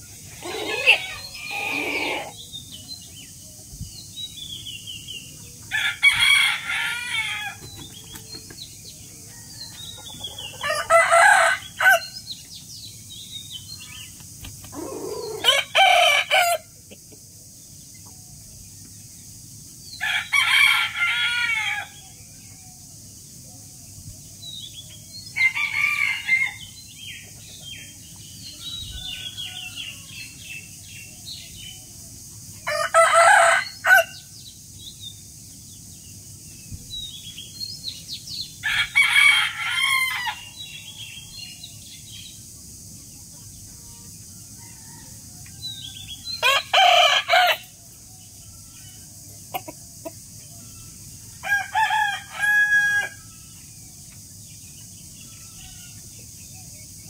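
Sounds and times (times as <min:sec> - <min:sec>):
rooster crowing: 0:00.4 - 0:02.4, 0:05.7 - 0:07.7, 0:09.2 - 0:12.2, 0:14.8 - 0:16.7, 0:20.0 - 0:22.1, 0:25.4 - 0:26.8, 0:28.6 - 0:30.3, 0:32.6 - 0:34.2, 0:38.6 - 0:40.8, 0:44.4 - 0:47.8, 0:51.4 - 0:53.5
bird chirps: 0:07.4 - 0:10.9.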